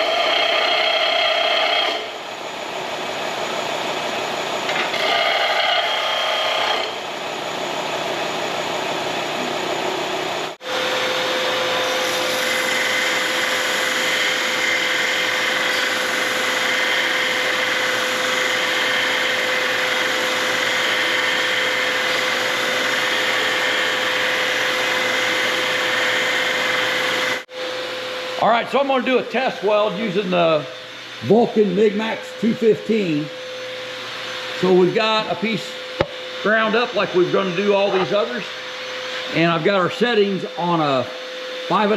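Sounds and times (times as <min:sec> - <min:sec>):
angle grinder grinding steel: 0:00.0 - 0:02.2, 0:04.7 - 0:07.0, 0:11.8 - 0:27.5, 0:34.5 - 0:39.7.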